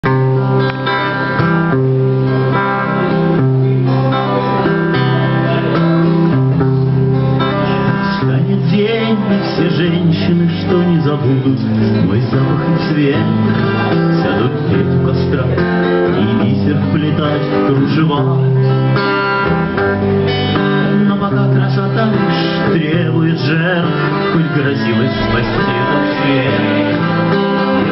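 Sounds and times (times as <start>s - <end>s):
acoustic guitar strumming: 0.0s - 27.9s
violin long held notes: 24.8s - 27.8s.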